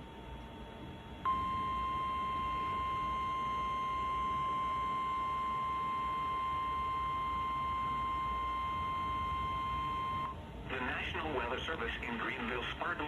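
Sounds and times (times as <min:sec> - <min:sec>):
high-pitched alarm tone: 0:01.3 - 0:10.3.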